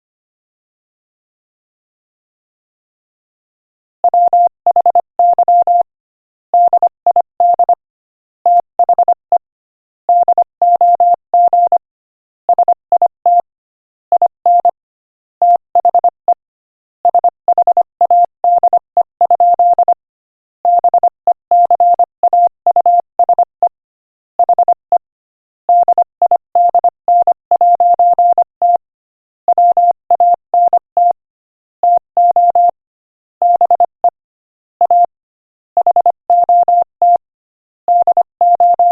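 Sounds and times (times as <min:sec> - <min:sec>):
morse code beeps: 0:04.1 - 0:05.9, 0:06.6 - 0:07.8, 0:10.1 - 0:11.8, 0:12.6 - 0:13.4, 0:14.2 - 0:14.8, 0:15.4 - 0:16.4, 0:17.1 - 0:20.0, 0:20.7 - 0:23.7, 0:24.4 - 0:25.0, 0:25.7 - 0:28.8, 0:29.5 - 0:31.2, 0:31.8 - 0:32.8, 0:33.4 - 0:34.2, 0:34.8 - 0:35.1, 0:35.8 - 0:37.2, 0:37.9 - 0:38.9.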